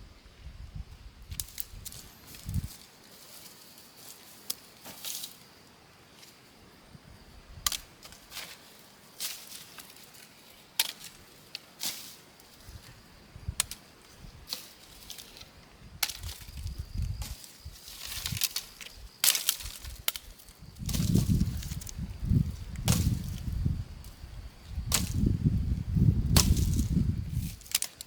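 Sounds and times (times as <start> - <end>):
dull thuds and handling noise: 20.8 - 23.6.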